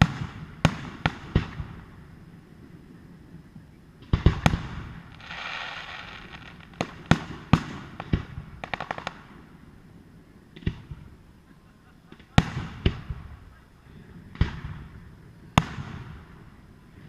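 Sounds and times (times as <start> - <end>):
fireworks bursting with sharp bangs: 0.0 - 2.4, 3.9 - 17.0
fireworks crackling fizz: 4.0 - 17.0.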